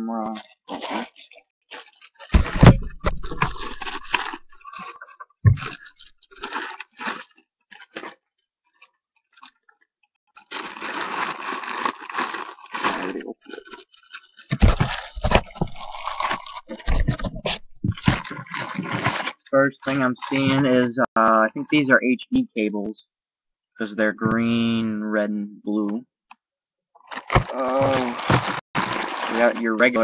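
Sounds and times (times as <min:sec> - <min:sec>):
plastic bag crinkling: 0:00.4 - 0:19.5, 0:27.0 - 0:30.0.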